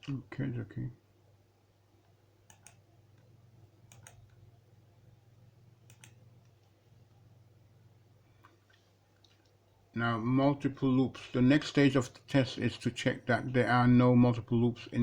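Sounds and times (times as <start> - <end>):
low steady hum: 0.0 - 15.0
computer mouse clicks: 2.4 - 4.4, 5.8 - 6.8.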